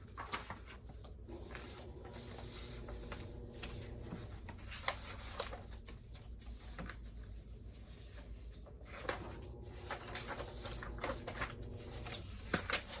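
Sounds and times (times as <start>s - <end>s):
washing machine humming: 0.1s - 5.7s, 8.8s - 13.0s.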